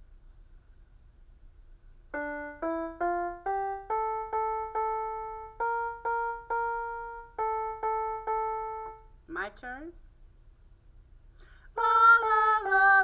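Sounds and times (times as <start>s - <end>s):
electronic keyboard piano melody: 2.1s - 9.2s.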